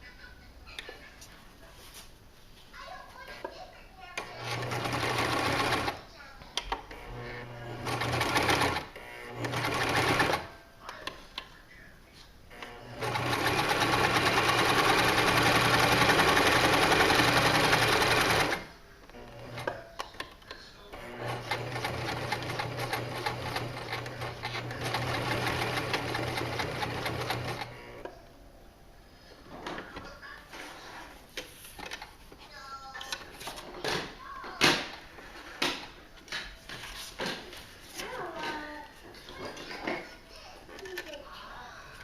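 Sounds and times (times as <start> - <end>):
sewing machine stitching: 4.2 - 6.0, 6.9 - 10.5, 12.5 - 19.8, 21.0 - 28.0.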